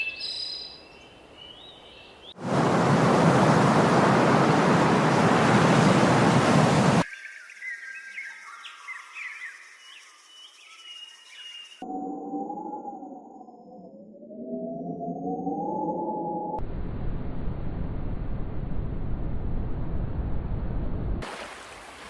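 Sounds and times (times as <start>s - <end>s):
birds chirping: 0.0s - 7.0s
loud steady rushing noise: 2.4s - 7.0s.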